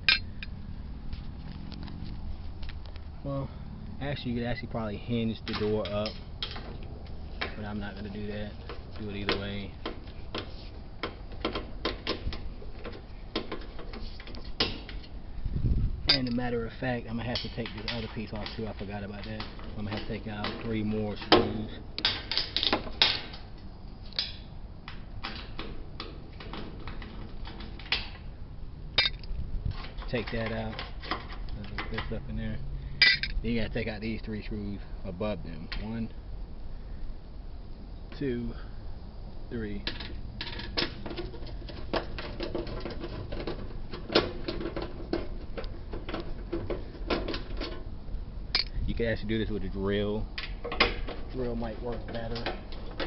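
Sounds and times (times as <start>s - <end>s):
nut driver metal clicks and scrapes: 16.1s - 23.5s, 29.0s - 32.2s, 33.0s - 33.6s, 48.5s - 48.8s
panel parts being handled: 29.0s - 32.2s, 33.0s - 33.4s, 39.8s - 48.0s.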